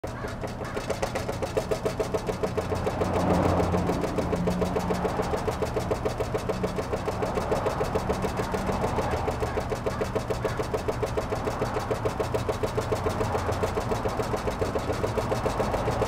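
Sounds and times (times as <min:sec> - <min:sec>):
engine running with pulsing beat: 0:00.0 - 0:16.0.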